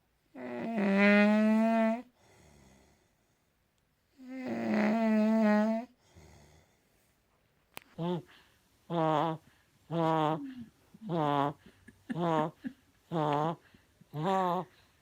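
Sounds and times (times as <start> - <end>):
man snoring: 0.4 - 3.0, 4.2 - 6.6.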